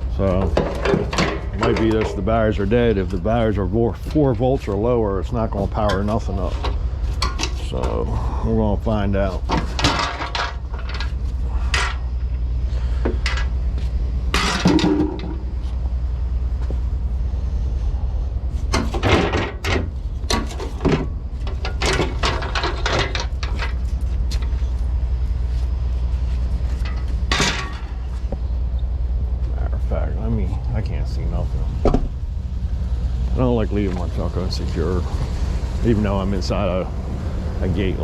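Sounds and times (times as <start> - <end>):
steady low hum: 0.0 - 38.0
metal knocks and clanks: 0.2 - 3.2, 5.7 - 8.0, 9.4 - 12.2, 14.3 - 15.6, 18.7 - 24.6, 26.7 - 28.4, 31.8 - 32.3.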